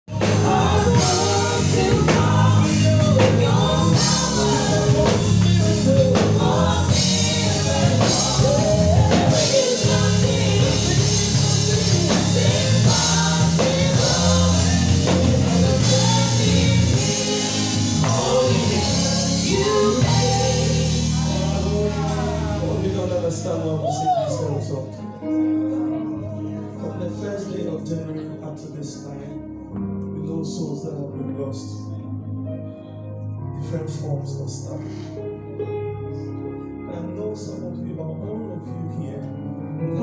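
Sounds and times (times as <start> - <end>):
bass line: 0.0 - 26.6
band playing: 0.1 - 24.0
voices singing gospel: 0.1 - 25.5.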